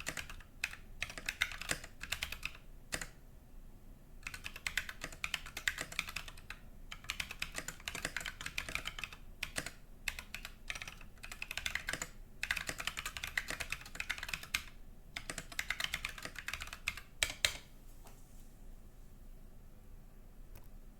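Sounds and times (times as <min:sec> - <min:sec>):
fast mechanical keyboard typing: 0:00.0 - 0:03.2, 0:04.2 - 0:17.6.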